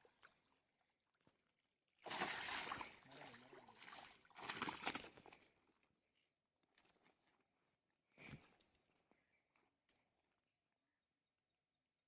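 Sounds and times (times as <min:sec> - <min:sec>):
water splashing: 0:02.0 - 0:05.2.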